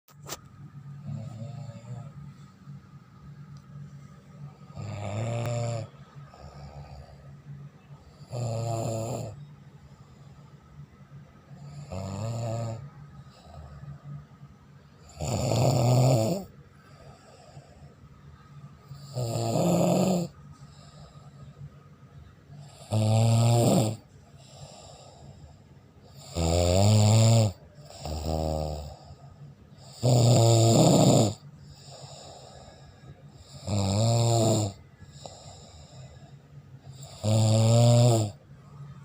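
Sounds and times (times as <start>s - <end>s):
faint breathing: 0.3s - 5.2s, 5.8s - 8.3s, 9.3s - 11.9s, 12.8s - 15.1s, 16.4s - 19.1s, 20.3s - 22.9s, 24.0s - 26.2s, 27.6s - 30.0s, 31.4s - 33.8s, 34.7s - 37.2s
person snoring loudly: 1.0s - 2.4s, 4.6s - 7.2s, 8.0s - 9.4s, 11.6s - 13.9s, 15.0s - 17.7s, 18.9s - 21.0s, 22.6s - 25.3s, 26.1s - 29.2s, 29.8s - 36.2s, 36.9s - 38.4s.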